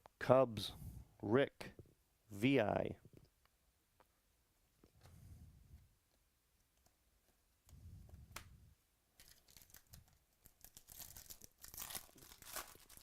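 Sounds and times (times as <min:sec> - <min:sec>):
foil wrapper tearing and crinkling: 0:09.2 - 0:13.0.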